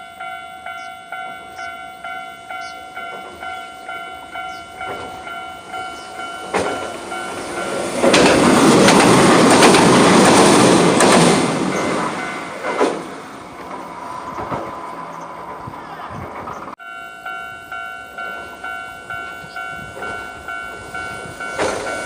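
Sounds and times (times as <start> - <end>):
level-crossing warning bell: 0.0 - 14.2, 16.7 - 22.0
train rumbling past: 0.0 - 22.0
wheel clicks over rail joints: 8.0 - 16.8.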